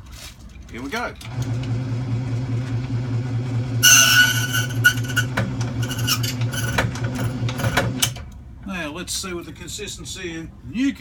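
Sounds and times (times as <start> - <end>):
key machine motor hum: 1.3 - 8.2
cutter screeching on metal: 3.8 - 8.1.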